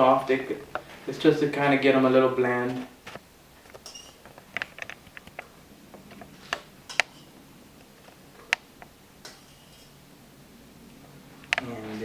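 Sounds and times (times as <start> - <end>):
kitchen utensils clicking: 3.6 - 10.1.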